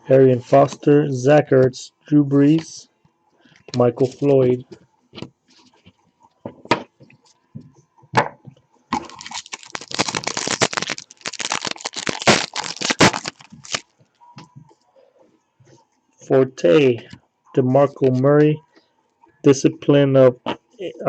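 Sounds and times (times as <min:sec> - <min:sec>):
wrapper crackling: 0:09.0 - 0:13.9.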